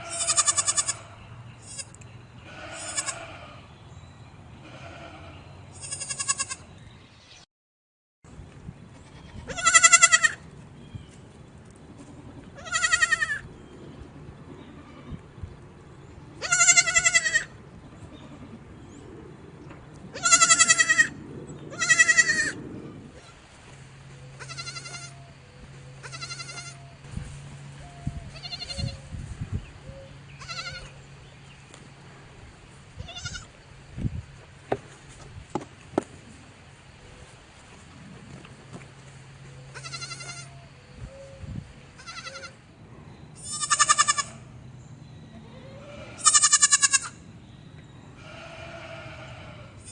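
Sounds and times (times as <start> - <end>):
goats bleating: 0.0 - 3.7, 4.6 - 6.6, 12.0 - 13.4, 16.4 - 17.5, 20.1 - 22.6, 24.4 - 25.2, 26.0 - 26.8, 39.7 - 40.5, 43.4 - 44.5, 45.6 - 47.2, 48.2 - 49.9.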